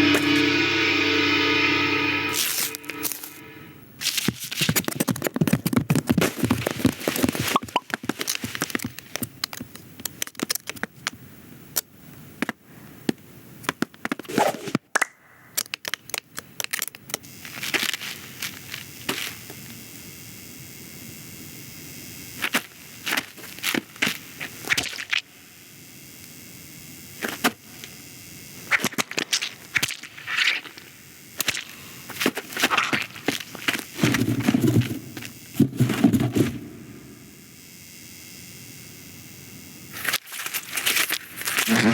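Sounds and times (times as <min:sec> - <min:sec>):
crackling and snapping: 0:04.0 - 0:11.2, 0:15.0 - 0:19.2.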